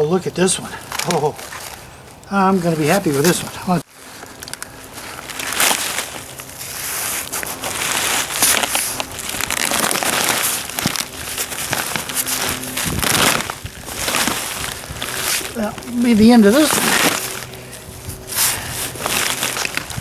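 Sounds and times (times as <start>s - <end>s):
hands digging through soil: 0.6s - 20.0s.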